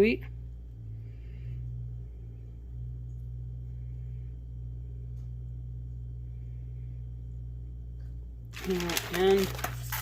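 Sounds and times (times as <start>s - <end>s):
low room hum: 0.0s - 10.0s.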